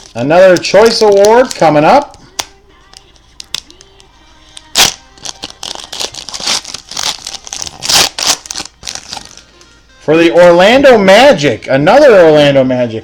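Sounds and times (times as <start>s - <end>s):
plastic packaging cracking: 0.0s - 9.4s
cards and packaging crinkling: 0.0s - 9.8s.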